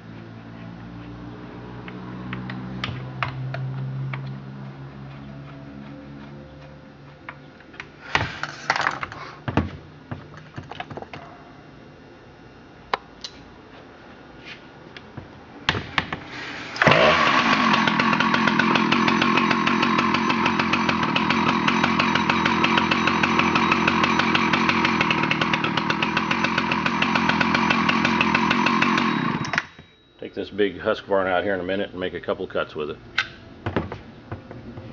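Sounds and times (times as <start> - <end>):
chainsaw engine running: 16.4 - 29.7.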